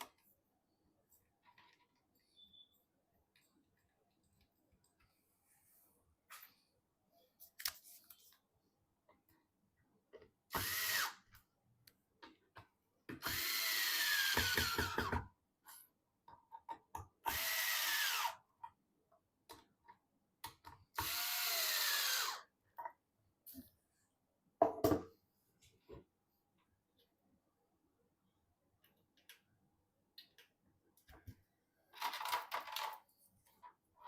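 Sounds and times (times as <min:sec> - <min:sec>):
electric screwdriver motor whine: 0:17.3 - 0:18.4, 0:21.0 - 0:22.4.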